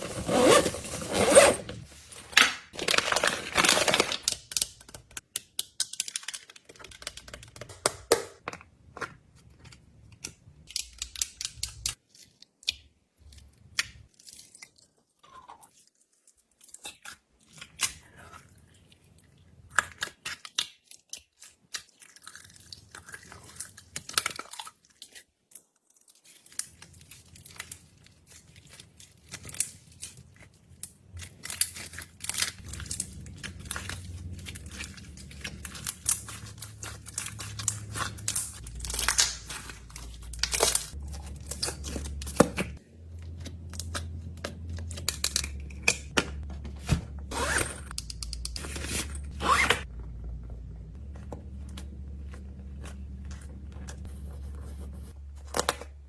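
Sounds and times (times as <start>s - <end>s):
packaging torn and crinkled: 2.1s - 7.7s, 26.0s - 46.2s.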